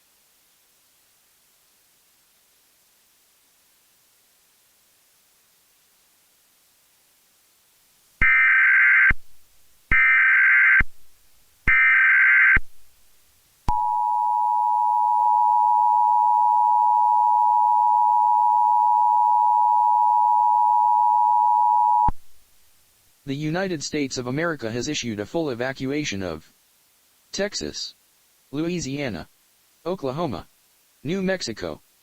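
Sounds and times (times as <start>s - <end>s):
two-tone attention signal: 13.7s - 22.1s.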